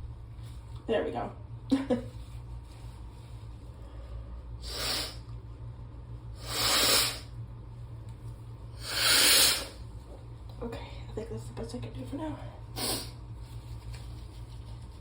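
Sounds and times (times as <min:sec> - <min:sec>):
person blowing nose: 0:04.6 - 0:05.2, 0:06.4 - 0:07.3, 0:08.8 - 0:09.8, 0:12.8 - 0:13.2.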